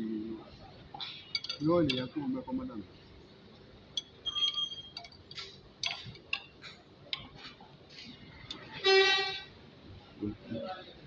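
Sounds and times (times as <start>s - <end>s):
metal tools clinking: 1.0s - 2.2s, 3.9s - 6.4s.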